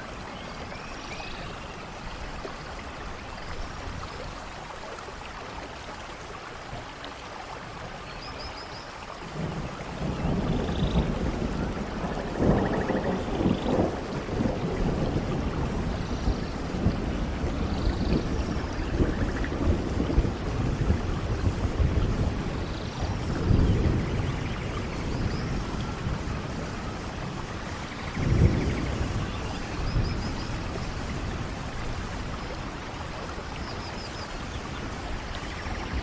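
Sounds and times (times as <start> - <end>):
heavy rain: 0.0 - 36.0
low rolling thunder: 9.3 - 36.0.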